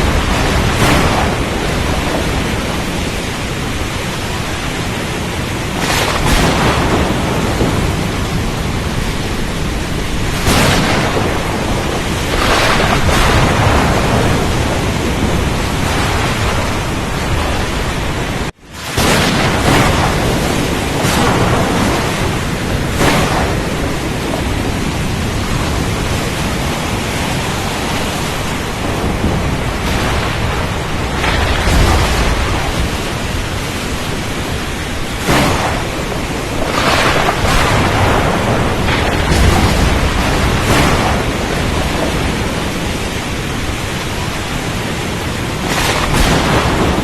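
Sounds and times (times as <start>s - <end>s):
rain and wind rushing: 0.0s - 47.0s.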